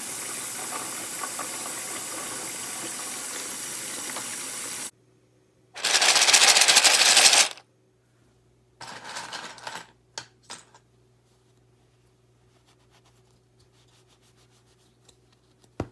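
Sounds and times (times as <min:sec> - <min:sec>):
steady hiss: 0:00.0 - 0:04.9
loud fast rattling: 0:05.8 - 0:07.6.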